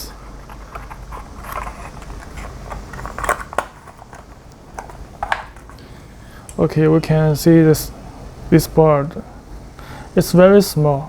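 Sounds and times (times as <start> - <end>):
steady low hum: 0.0 - 11.0
cardboard box rustling: 0.2 - 5.0.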